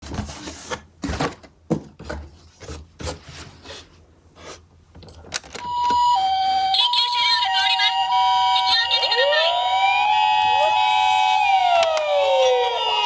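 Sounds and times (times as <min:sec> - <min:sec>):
two-tone ambulance siren: 0:05.6 - 0:13.0.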